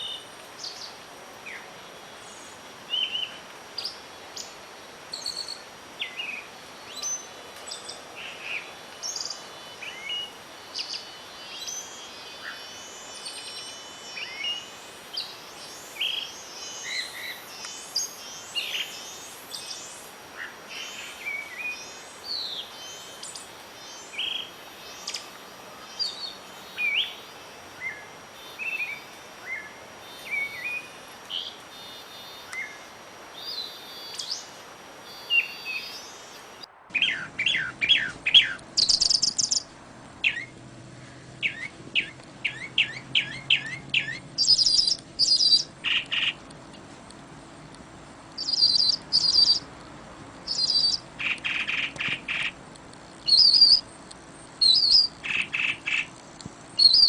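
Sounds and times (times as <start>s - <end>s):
soft steady hiss: 0.0s - 57.0s
songbirds chirping: 0.0s - 57.0s
rapid bird trills: 8.2s - 46.4s, 48.4s - 49.7s, 50.5s - 52.6s, 53.2s - 53.9s, 54.6s - 57.0s.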